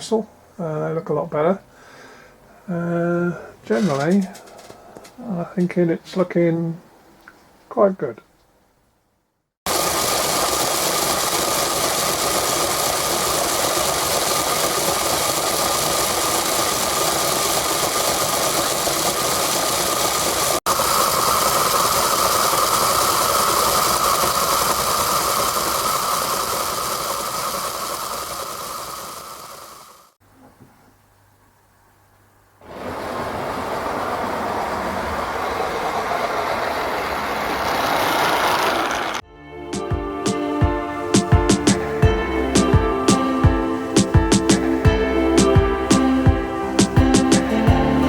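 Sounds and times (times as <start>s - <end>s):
model train motor rattling whir: 9.7s - 30.1s, 35.3s - 39.2s.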